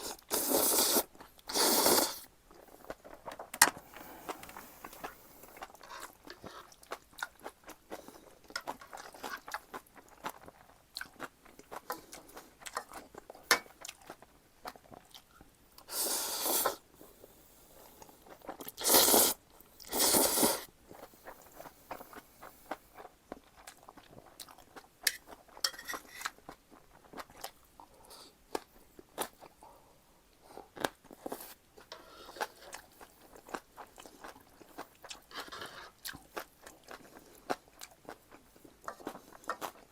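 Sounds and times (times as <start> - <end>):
noodles being slurped: 0.0 - 3.0, 18.6 - 20.7
chewing and crunching: 2.5 - 15.9, 20.8 - 29.7, 30.4 - 39.9.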